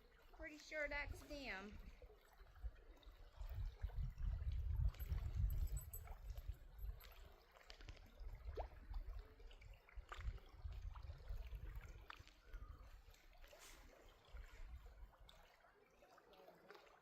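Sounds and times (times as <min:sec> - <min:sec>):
water trickling and dripping: 0:00.0 - 0:17.0.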